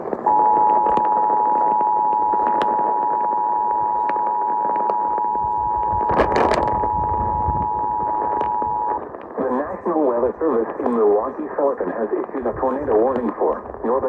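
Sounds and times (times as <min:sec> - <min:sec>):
radio clicks and crackle: 0:00.0 - 0:14.0
radio reception hiss: 0:00.0 - 0:14.0
two-tone alert signal: 0:00.3 - 0:09.6.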